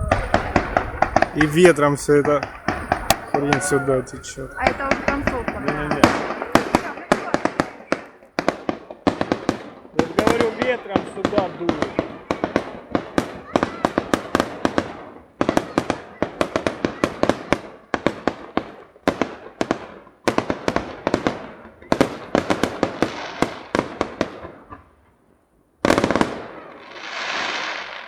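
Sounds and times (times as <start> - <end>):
fireworks hiss: 0.0 - 8.7, 27.0 - 28.0
fireworks bangs: 0.0 - 28.0.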